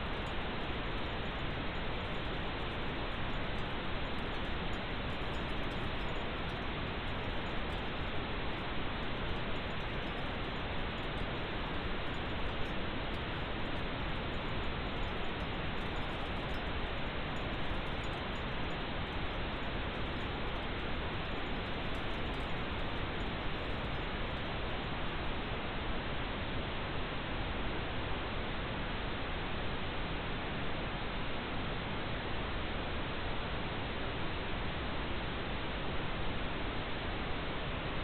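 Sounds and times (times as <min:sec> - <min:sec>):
pink noise hiss: 0:00.0 - 0:26.5.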